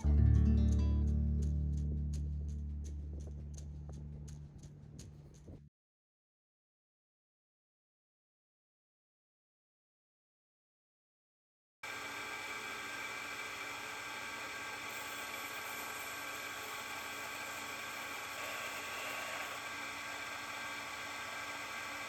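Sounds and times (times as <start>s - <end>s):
electric machine whirring: 11.8s - 22.0s.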